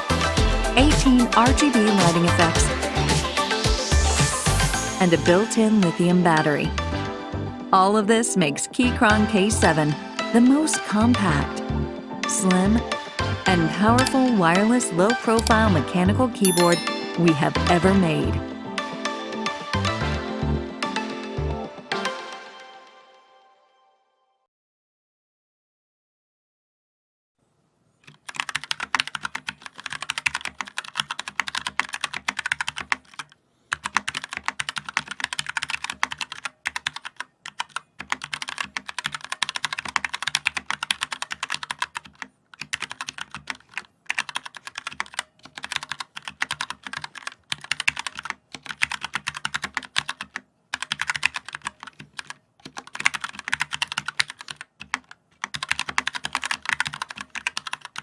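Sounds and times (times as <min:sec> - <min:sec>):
mechanical keyboard typing: 0:28.0 - 0:58.0.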